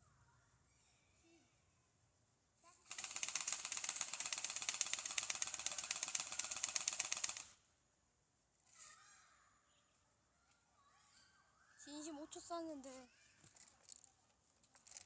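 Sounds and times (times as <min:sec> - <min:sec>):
airsoft gun firing full-auto: 0:02.9 - 0:07.6.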